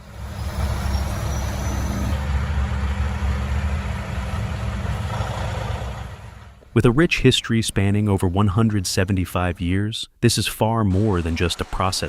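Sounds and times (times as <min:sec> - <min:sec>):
heavy truck engine rumbling: 0:00.0 - 0:09.2.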